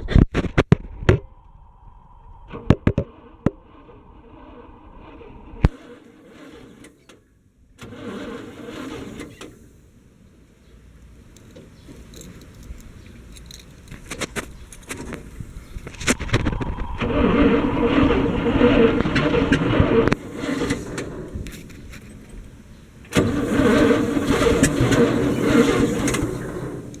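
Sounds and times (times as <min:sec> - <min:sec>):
keys jangling: 0:11.4 - 0:14.9
short rushing noise: 0:14.2 - 0:26.9.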